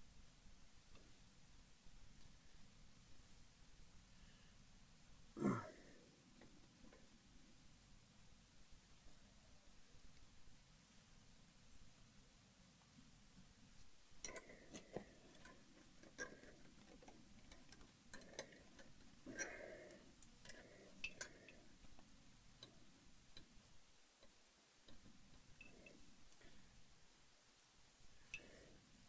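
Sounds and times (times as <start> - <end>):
metallic clicks of tools: 14.2 - 22.0.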